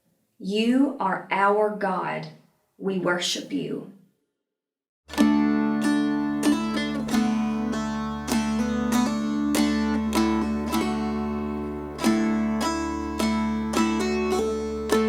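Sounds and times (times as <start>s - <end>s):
plucked string instrument music: 5.1s - 15.0s.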